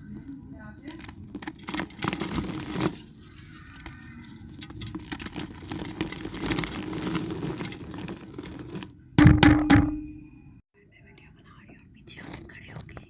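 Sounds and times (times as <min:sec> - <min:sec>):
dirt crunching in a clay pot: 0:00.0 - 0:10.1.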